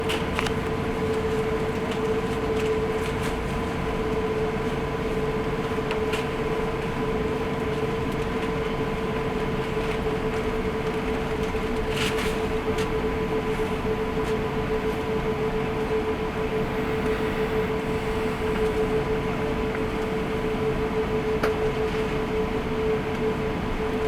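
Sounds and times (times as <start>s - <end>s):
aircraft cabin drone: 13.1s - 24.0s.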